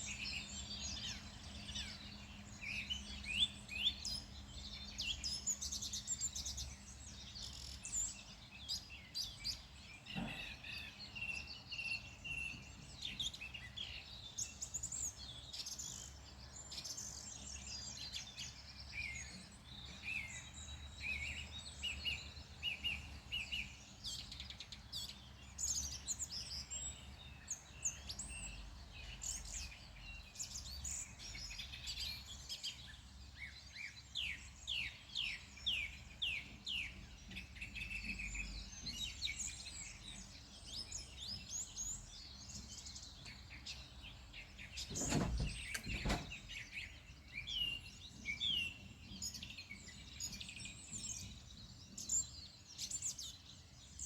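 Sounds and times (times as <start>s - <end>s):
songbirds chirping and trilling: 0.0s - 54.0s
short knock: 44.9s - 46.4s.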